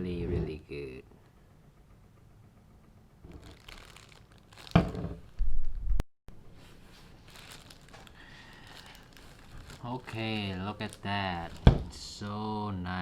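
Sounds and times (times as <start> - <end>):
packaging crinkling: 3.3 - 5.1, 6.9 - 12.2.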